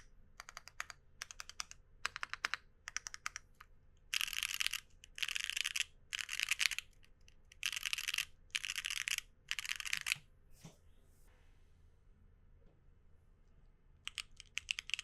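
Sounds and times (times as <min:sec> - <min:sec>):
mechanical keyboard typing: 0:00.0 - 0:03.4, 0:04.1 - 0:06.9, 0:07.5 - 0:10.2, 0:14.1 - 0:15.0.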